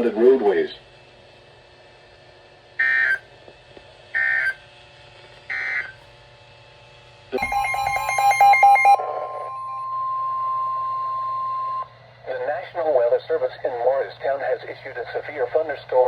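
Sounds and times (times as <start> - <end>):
weather radio alarm tone: 7.4 - 11.9.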